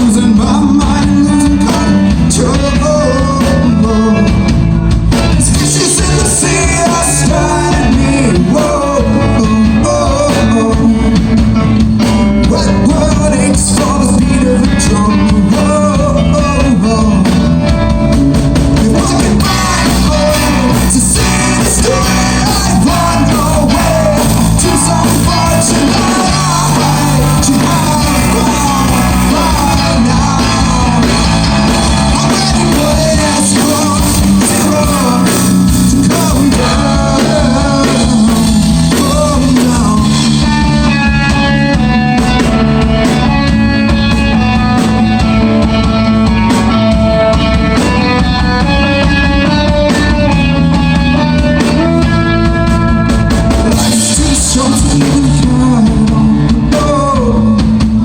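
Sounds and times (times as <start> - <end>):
lead vocal singing: 0.0 - 58.0
rock band playing: 0.0 - 58.0.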